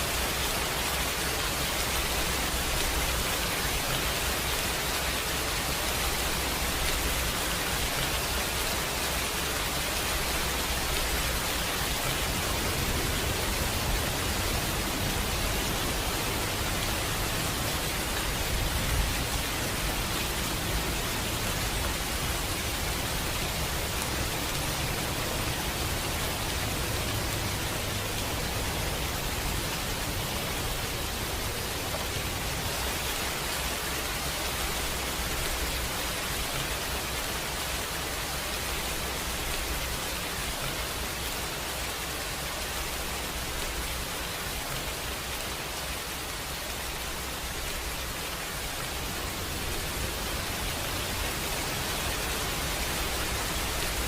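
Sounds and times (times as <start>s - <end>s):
heavy rain hiss: 0.0s - 54.0s.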